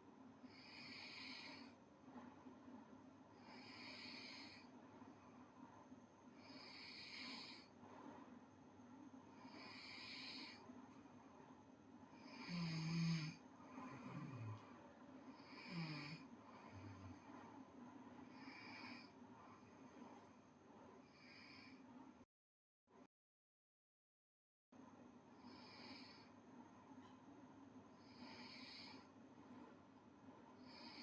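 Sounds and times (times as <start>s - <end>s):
girl snoring softly: 0.4s - 1.8s, 3.3s - 4.8s, 6.3s - 8.3s, 9.2s - 10.8s, 12.1s - 17.6s, 18.2s - 20.3s, 21.0s - 21.9s, 25.4s - 26.4s, 27.9s - 29.2s, 30.6s - 31.0s.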